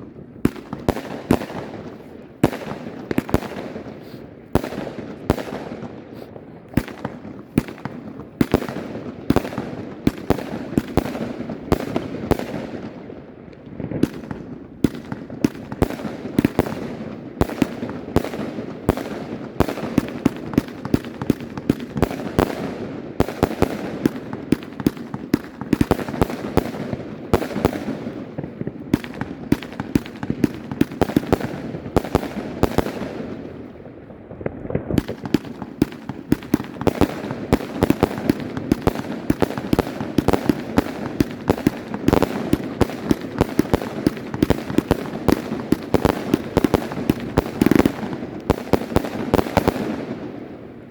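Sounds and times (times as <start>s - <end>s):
fireworks bangs and crackling: 0.0s - 50.9s.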